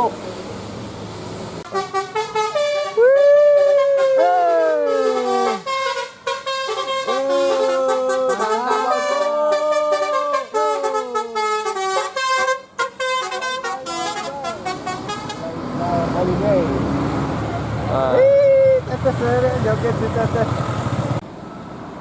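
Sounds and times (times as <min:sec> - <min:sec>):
bus horn playing a tune: 0:01.7 - 0:03.0, 0:03.6 - 0:15.5.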